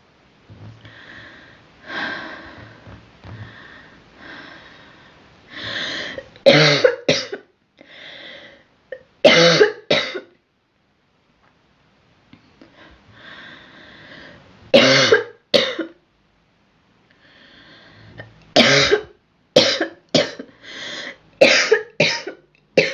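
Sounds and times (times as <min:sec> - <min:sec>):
girl coughing: 0:06.5 - 0:07.4, 0:09.2 - 0:10.3, 0:14.8 - 0:16.0, 0:18.6 - 0:20.5, 0:21.4 - 0:22.9.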